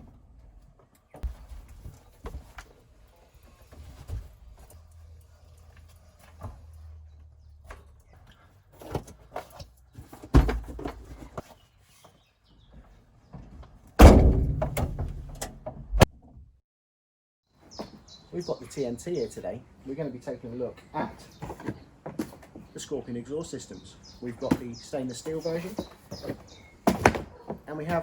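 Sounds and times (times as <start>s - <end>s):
ringing thump: 14.0s - 15.5s
heavy thud: 14.0s - 16.1s.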